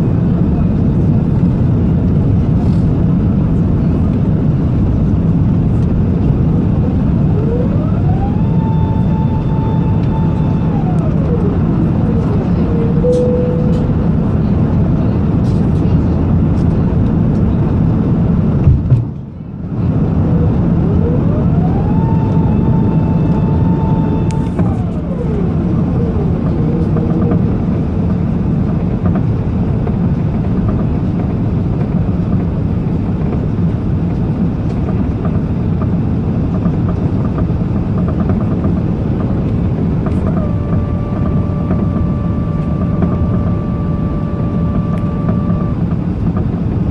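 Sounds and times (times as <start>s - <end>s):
loud engine rumble: 0.0s - 46.9s
steady higher tone: 6.6s - 15.3s, 20.0s - 28.1s, 40.1s - 46.1s
rising and falling tone: 6.8s - 14.4s, 20.1s - 28.0s, 40.0s - 46.0s.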